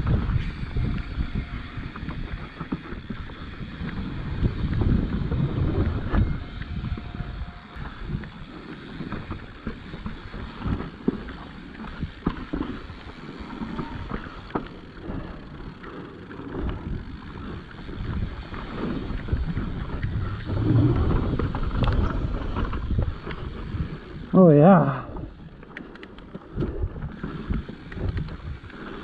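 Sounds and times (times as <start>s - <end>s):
wind buffeting microphone: 0.0s - 25.6s, 26.2s - 29.0s
bike tyres rolling on dirt: 0.0s - 29.0s
bike knocks and rattles: 7.8s - 23.7s.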